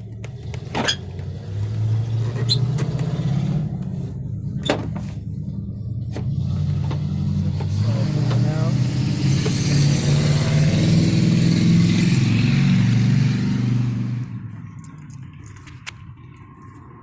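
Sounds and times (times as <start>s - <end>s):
car engine running: 0.0s - 17.0s
sharp clicks of parts handled: 14.6s - 16.9s.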